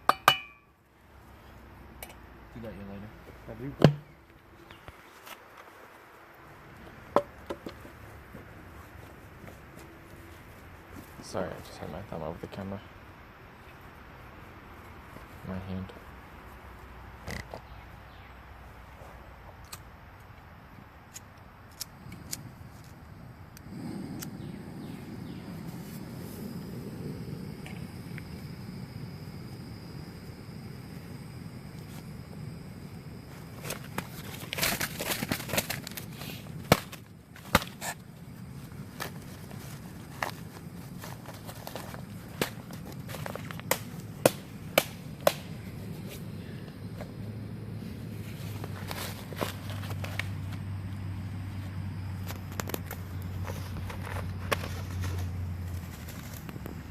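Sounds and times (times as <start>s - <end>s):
low steady hum: 0.0s - 56.9s
camp stove burner roaring: 21.1s - 56.9s.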